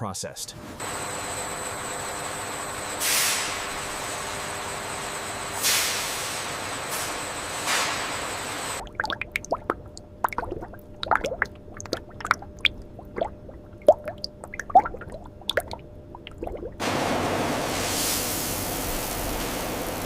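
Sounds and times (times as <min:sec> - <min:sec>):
liquid dripping and plopping: 0:08.8 - 0:16.8
steady hiss: 0:17.6 - 0:20.0.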